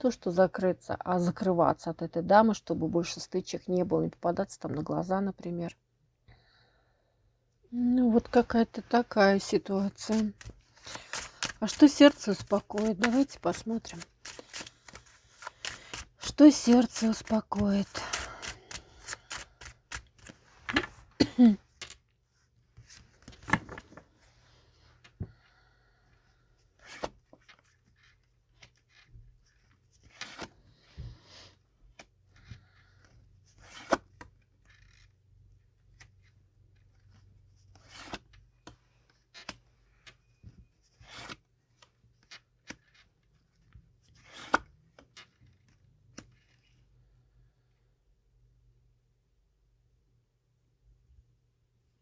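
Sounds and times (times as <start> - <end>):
cards shuffled and slapped down: 23.2 - 24.0, 44.2 - 45.5.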